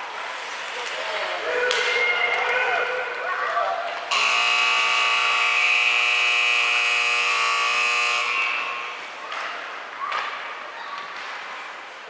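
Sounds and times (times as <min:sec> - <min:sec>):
rink and crowd noise: 0:00.0 - 0:12.0
scoreboard buzzer blaring: 0:04.1 - 0:09.1.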